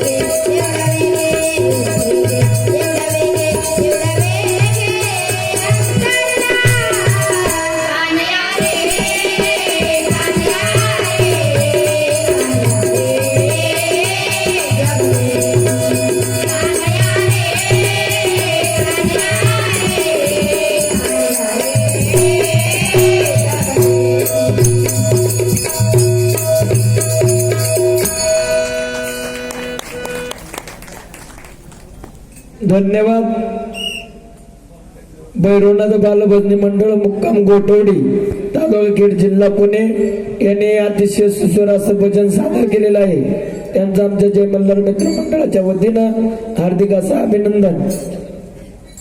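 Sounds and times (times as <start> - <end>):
harmonium notes: 0.0 - 31.1
jingling hand percussion: 0.0 - 32.6, 45.0 - 46.0, 47.8 - 49.0.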